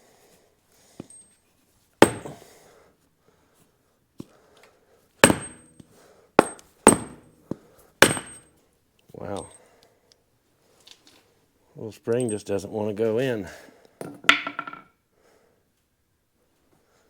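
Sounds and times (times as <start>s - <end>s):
hammer blows on metal nut: 2.0s - 2.4s, 5.2s - 8.4s.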